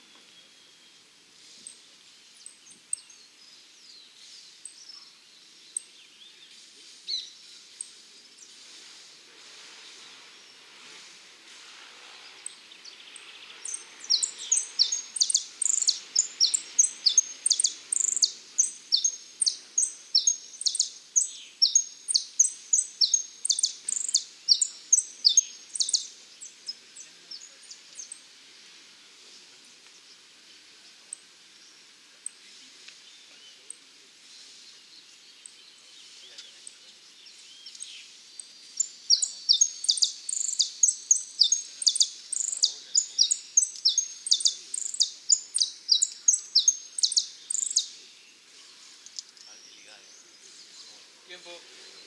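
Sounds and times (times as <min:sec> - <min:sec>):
finch singing high chirps: 0:12.5 - 0:28.2, 0:36.4 - 0:48.2.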